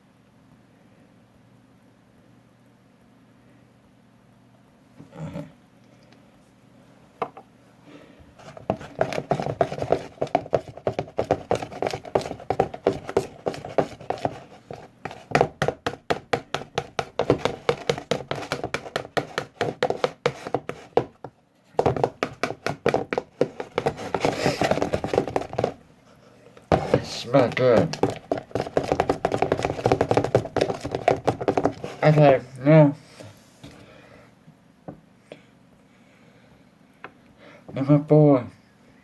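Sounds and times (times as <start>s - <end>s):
sticky clicks and taps: 8.4s - 25.8s, 26.6s - 32.4s
slime being stirred: 8.4s - 33.8s.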